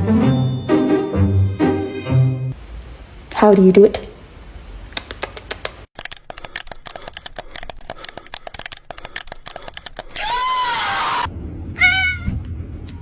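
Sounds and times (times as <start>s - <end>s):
rapid clicking and tapping: 5.0s - 10.2s
cat meowing: 11.8s - 12.4s.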